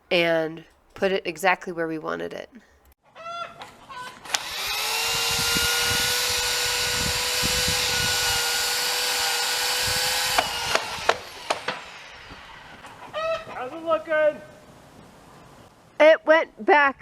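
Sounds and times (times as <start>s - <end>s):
chainsaw cutting tree trunk: 4.1s - 13.1s
sharp knocks: 10.3s - 11.9s.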